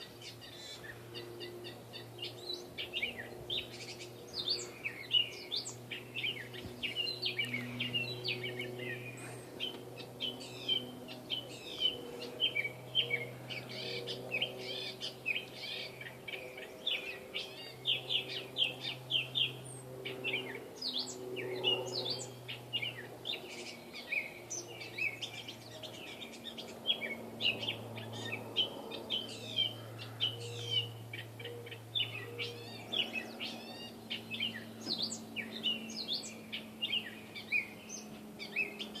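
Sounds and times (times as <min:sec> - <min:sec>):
low hum: 0:00.0 - 0:39.0
bird singing squeaky chirps: 0:29.1 - 0:39.0.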